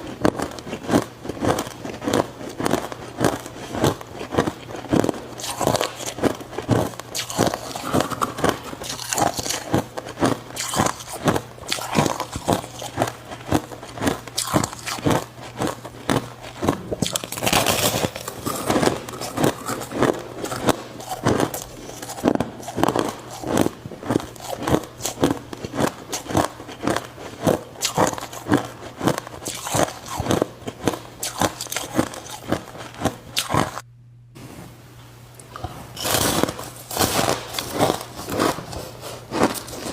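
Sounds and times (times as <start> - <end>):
ice crunching while chewed: 0.0 - 33.8, 35.4 - 39.9
low hum: 5.2 - 10.6, 31.1 - 39.3.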